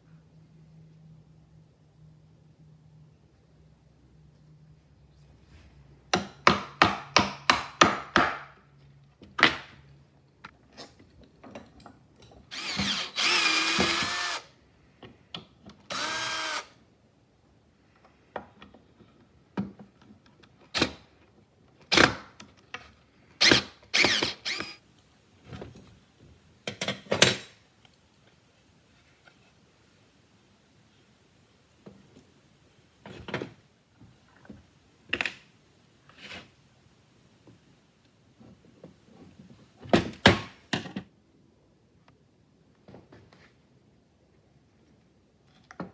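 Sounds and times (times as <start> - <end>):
drill clicks: 12.5 - 14.5, 15.9 - 16.7, 23.4 - 24.8
power drill motor: 12.5 - 14.5, 15.9 - 16.8, 23.4 - 24.8.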